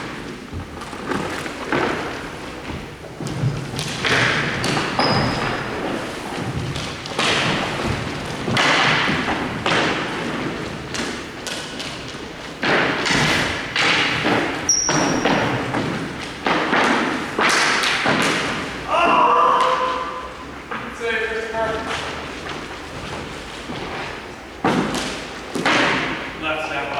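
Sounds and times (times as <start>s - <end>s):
skates scraping ice: 0.0s - 18.8s.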